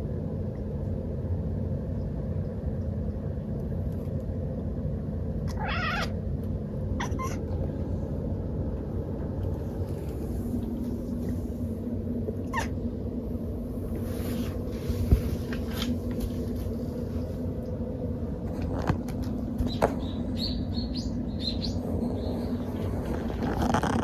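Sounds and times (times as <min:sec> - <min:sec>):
steady low hum: 0:00.0 - 0:24.0
kitten squeaking: 0:05.5 - 0:06.1.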